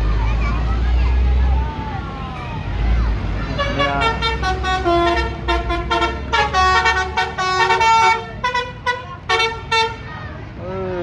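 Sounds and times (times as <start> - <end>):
bus engine rumble: 0.0 - 11.0
bus horn playing rapid melody: 3.6 - 10.0.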